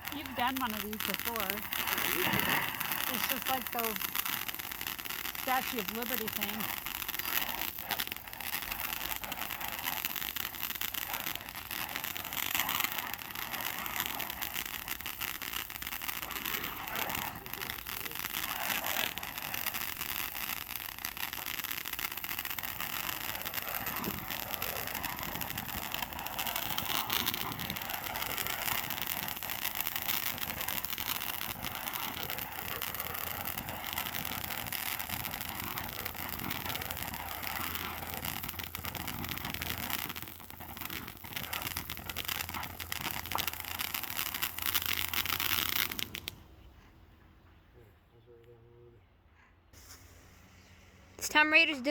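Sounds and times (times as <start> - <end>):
firework sparks hissing and crackling: 0.0 - 46.7, 49.8 - 51.9.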